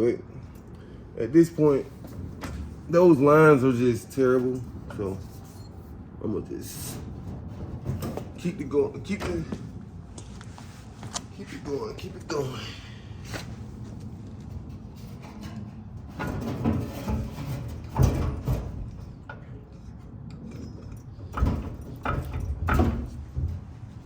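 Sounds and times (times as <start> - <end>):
metal parts clunking and scraping: 1.6 - 5.9, 6.7 - 9.7, 13.4 - 24.0.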